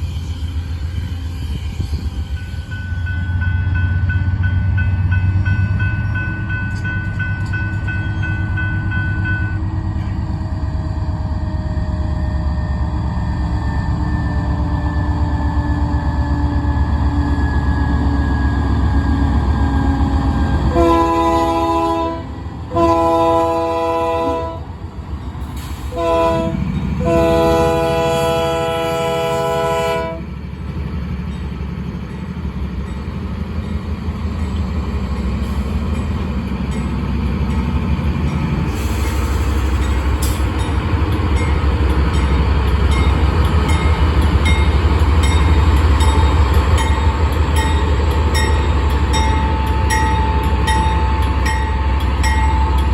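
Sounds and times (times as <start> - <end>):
locomotive horn blasts: 20.6 - 24.7, 25.9 - 30.3.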